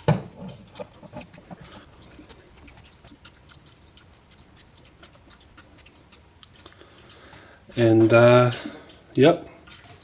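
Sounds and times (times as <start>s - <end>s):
hands and utensils handling food: 0.0s - 3.2s.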